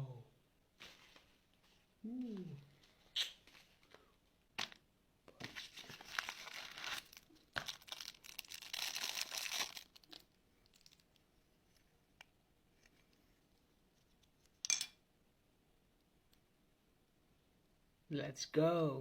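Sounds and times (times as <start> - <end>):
crinkly material rustling and tearing: 5.4 - 11.9.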